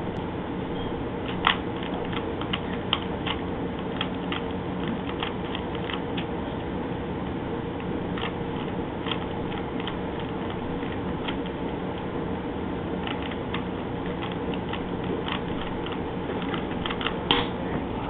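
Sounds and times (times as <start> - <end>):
steady background hum: 0.0 - 18.0
puzzle cube clicking: 1.3 - 6.3, 13.0 - 17.4.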